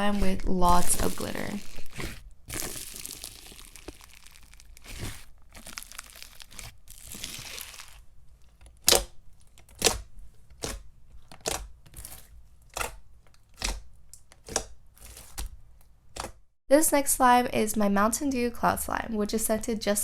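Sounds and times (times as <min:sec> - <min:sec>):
slime crackling: 0:00.0 - 0:10.8.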